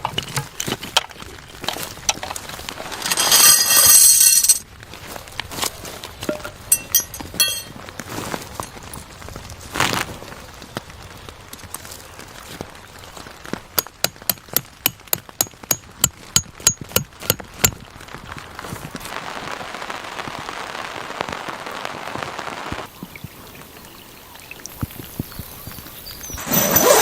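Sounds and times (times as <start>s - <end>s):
rain falling: 0.0s - 27.0s
sharp knocks: 13.8s - 17.8s.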